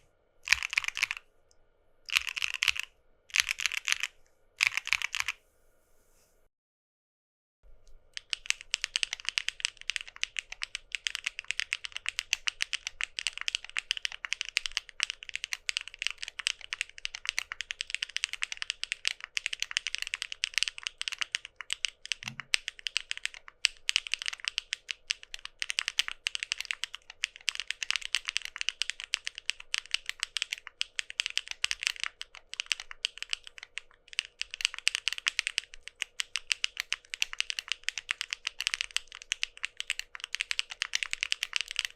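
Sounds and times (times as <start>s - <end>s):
fast typing on mechanical keyboard: 0.5s - 1.2s, 2.1s - 5.4s, 8.2s - 41.9s.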